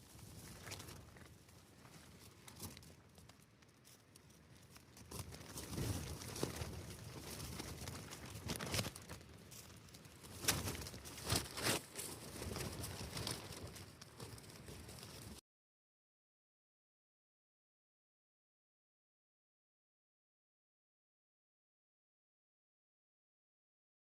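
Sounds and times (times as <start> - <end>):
tent fabric flapping in wind: 0.0 - 15.4.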